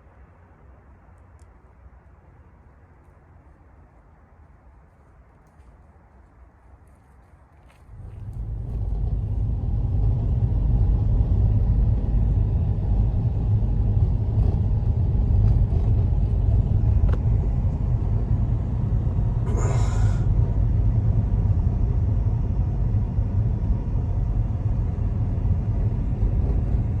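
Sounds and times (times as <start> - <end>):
storm wind rumbling: 7.9 - 27.0.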